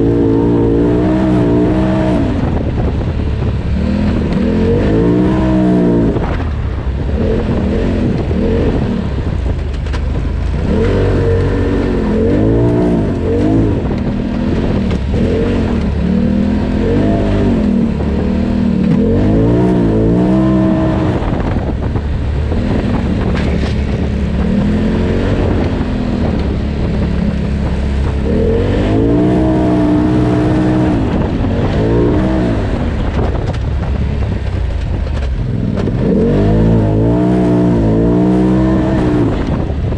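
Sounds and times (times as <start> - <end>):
off-road vehicle engine revving: 0.0 - 39.9.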